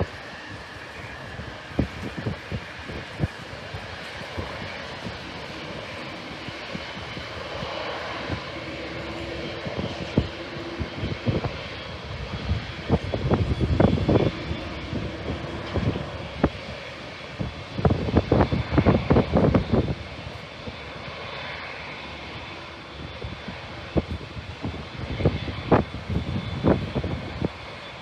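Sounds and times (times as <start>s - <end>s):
jet engines passing: 0.0s - 28.0s
wind buffeting microphone: 0.0s - 28.0s.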